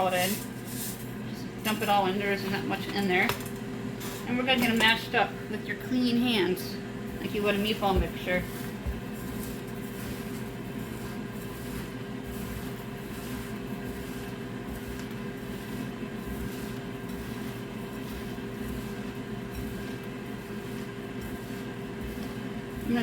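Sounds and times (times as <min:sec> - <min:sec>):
steady mechanical hum: 0:00.0 - 0:23.0
wet squishing of mashing by hand: 0:07.8 - 0:23.0.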